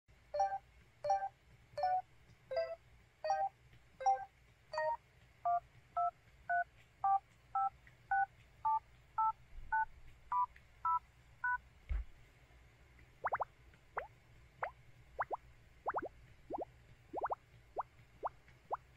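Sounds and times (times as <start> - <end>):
low thump: 11.9 - 12.2.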